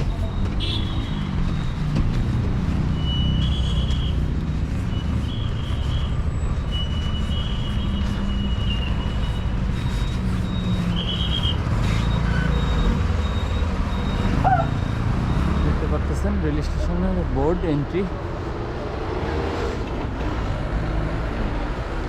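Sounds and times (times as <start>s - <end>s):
short high-pitched beeps: 0.0s - 2.2s, 2.8s - 17.1s
vehicle engines rumbling: 0.0s - 22.0s.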